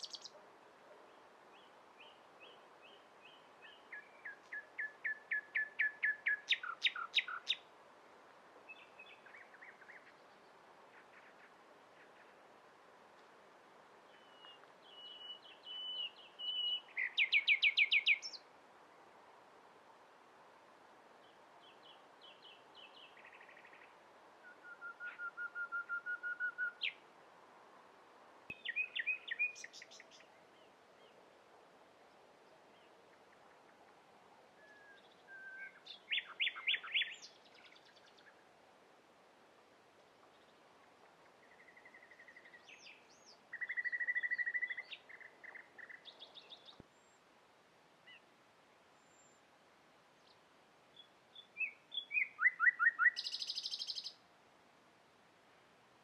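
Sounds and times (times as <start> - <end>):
nightingale singing: 0.0 - 7.7, 14.1 - 18.5, 21.6 - 27.0, 28.5 - 30.7, 34.6 - 38.4, 41.2 - 47.2, 50.2 - 54.2
faint steady hiss: 0.0 - 56.0.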